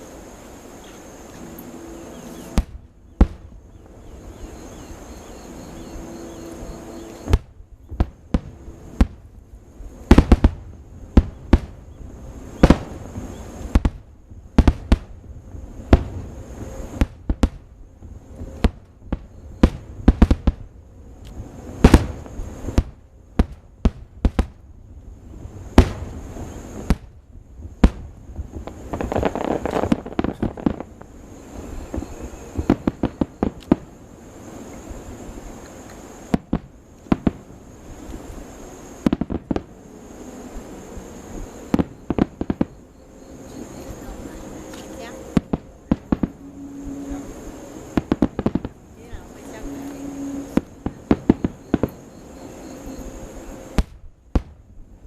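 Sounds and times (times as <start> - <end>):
fireworks crackle: 0.0 - 55.0
fireworks shells bursting: 27.8 - 54.6.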